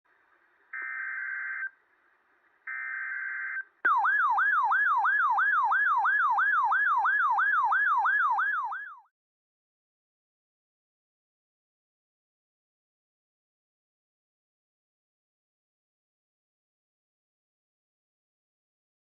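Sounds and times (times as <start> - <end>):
electronic siren-like alert tone: 2.7 - 9.1.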